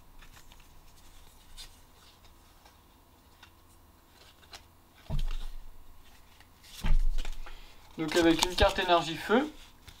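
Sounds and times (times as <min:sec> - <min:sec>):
trading cards rustling: 0:00.2 - 0:09.2.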